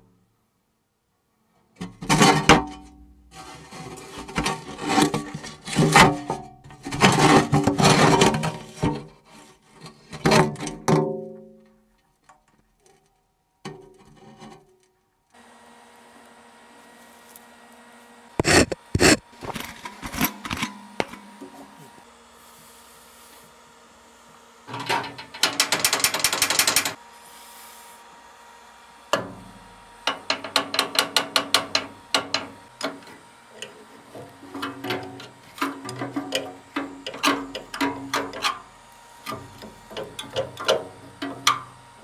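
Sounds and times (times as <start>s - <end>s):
metal scraping and clanking: 1.8s - 9.0s, 18.4s - 20.8s, 34.2s - 38.6s.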